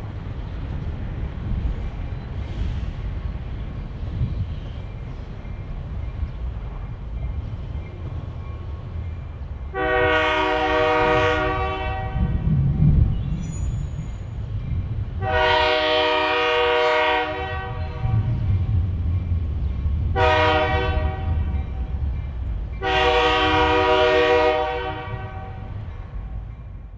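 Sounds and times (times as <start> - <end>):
train rumbling along track: 0.0 - 26.9
locomotive air horn blasts: 9.7 - 12.4, 15.2 - 18.4, 20.1 - 21.6, 22.8 - 25.8.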